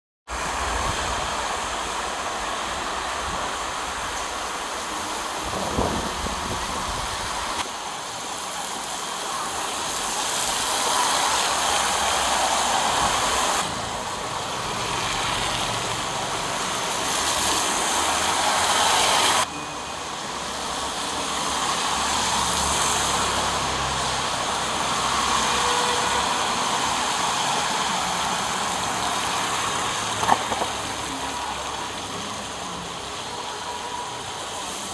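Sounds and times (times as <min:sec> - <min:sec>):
hiss of passing vehicles: 0:00.3 - 0:34.9.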